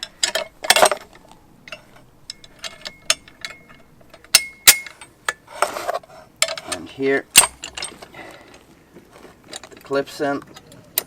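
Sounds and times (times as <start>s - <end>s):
sharp metal clicks: 0.0s - 5.4s
metal parts clanking: 0.0s - 11.0s.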